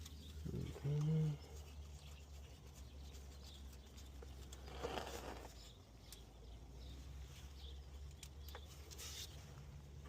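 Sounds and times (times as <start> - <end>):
rustling scrape: 1.6 - 5.8, 8.7 - 9.7
faint scraping: 4.4 - 5.8.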